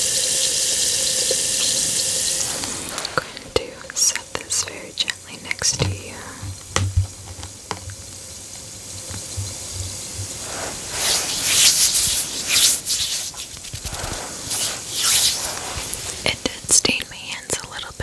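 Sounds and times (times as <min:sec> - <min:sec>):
bath bomb fizzing in water: 0:00.0 - 0:16.8
rubbing and brushing on microphone: 0:10.2 - 0:16.8.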